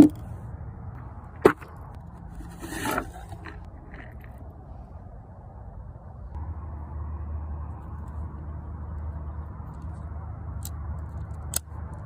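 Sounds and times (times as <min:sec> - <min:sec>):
short scrape: 0:02.3 - 0:03.7.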